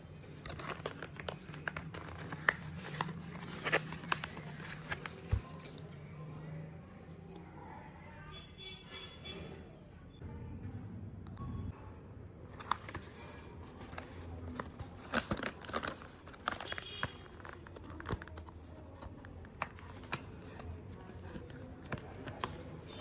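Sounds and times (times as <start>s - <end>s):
packaging crinkling and tearing: 0.2s - 6.0s, 12.6s - 23.0s.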